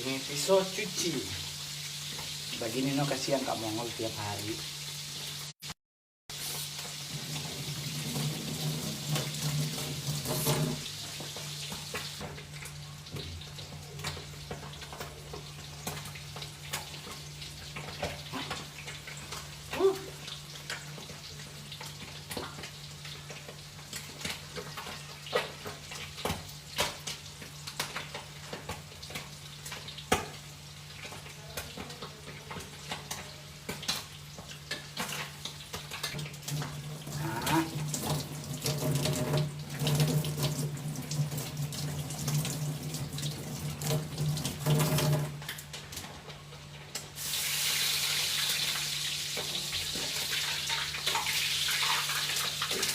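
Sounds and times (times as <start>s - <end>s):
tap running into a sink: 7.1s - 12.4s, 36.0s - 45.6s.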